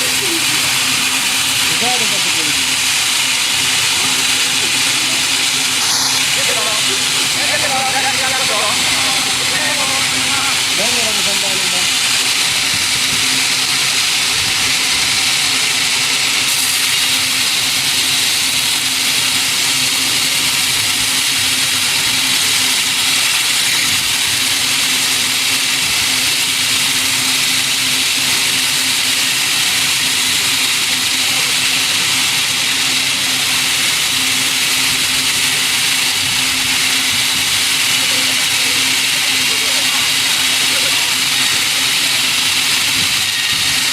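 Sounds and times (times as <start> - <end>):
machinery low hum: 0.0 - 19.6
sawmill machinery high-pitched noise: 0.0 - 43.9.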